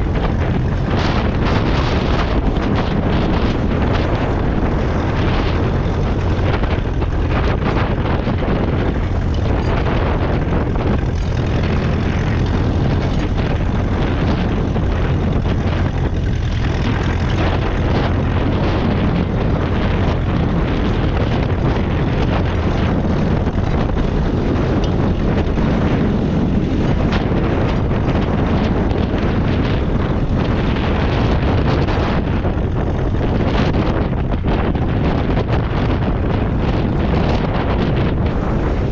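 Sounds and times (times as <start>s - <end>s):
tractor engine running: 0.0s - 38.9s
wind buffeting microphone: 0.0s - 38.9s.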